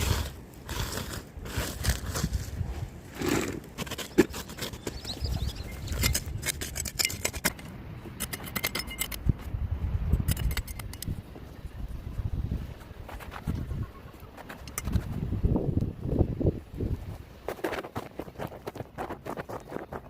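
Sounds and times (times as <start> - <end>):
clicks and scrapes of debris: 0.0 - 9.6.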